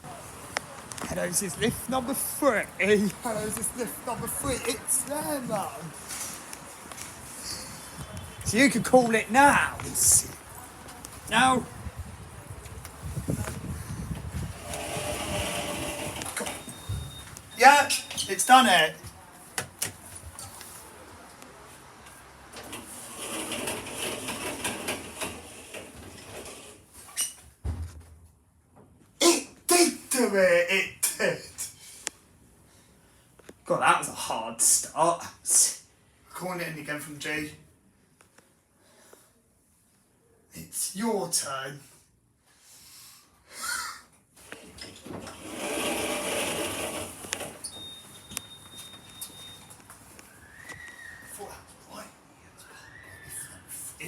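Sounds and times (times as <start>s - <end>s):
low thump: 27.6s - 28.3s
steady high beep: 47.8s - 49.7s.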